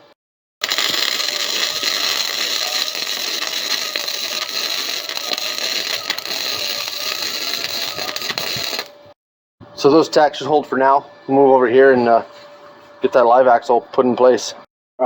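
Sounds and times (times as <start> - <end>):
arc welding crackling hiss: 0.6 - 8.9.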